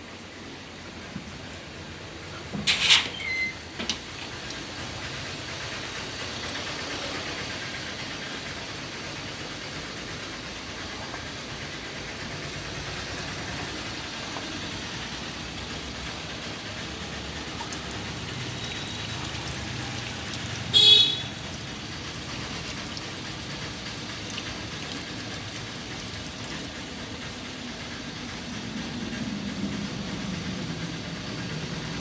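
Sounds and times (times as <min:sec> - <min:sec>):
short high-pitched squeal: 0:02.7 - 0:03.6.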